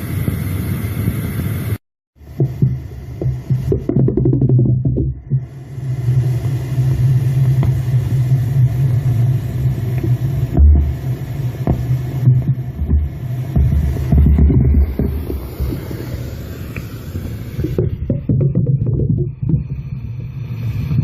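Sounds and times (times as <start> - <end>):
low machine hum: 0.0 - 21.0
deep thuds: 11.6 - 16.3, 17.2 - 20.0.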